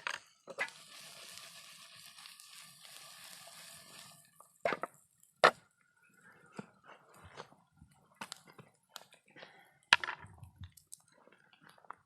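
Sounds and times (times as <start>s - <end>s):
vegetables sizzling in frying pan: 0.5s - 4.9s.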